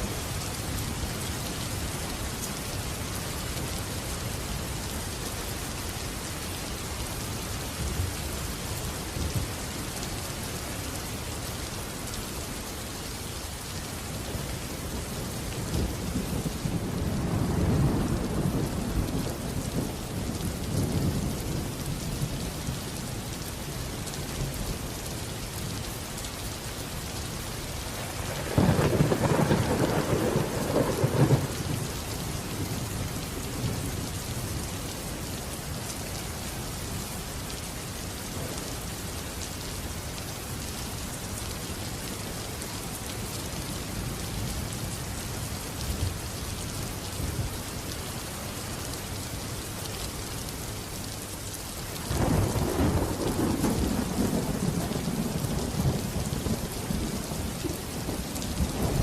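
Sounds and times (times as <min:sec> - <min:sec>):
steady rain falling: 0:00.0 - 0:59.0
thunder rumbling: 0:28.0 - 0:32.0, 0:52.1 - 0:59.0.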